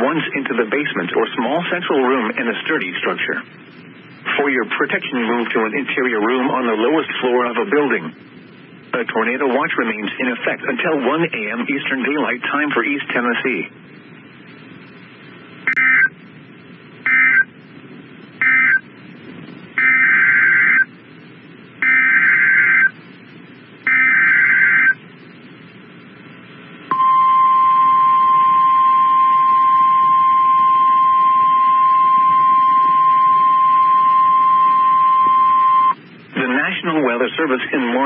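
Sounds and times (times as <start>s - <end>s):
data tone bursts: 15.7s - 16.1s, 17.0s - 17.5s, 18.4s - 18.9s, 19.8s - 20.9s, 21.8s - 23.0s, 23.8s - 25.0s, 26.9s - 36.0s
steady warning alarm tone: 15.7s - 16.1s, 17.0s - 17.5s, 18.4s - 18.8s, 19.8s - 20.9s, 21.8s - 23.0s, 23.8s - 25.0s, 26.9s - 36.0s.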